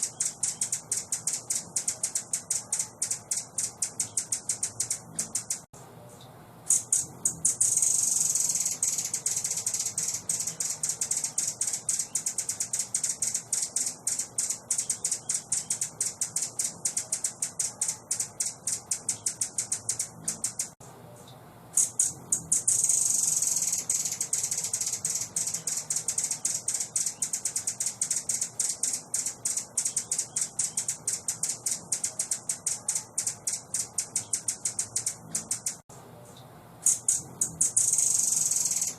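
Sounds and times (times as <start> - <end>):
songbird chattering song: 0.0 - 38.9.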